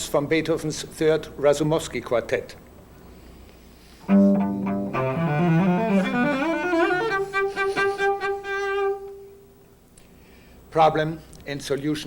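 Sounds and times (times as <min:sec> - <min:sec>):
cello playing rising passage: 0:04.0 - 0:09.4.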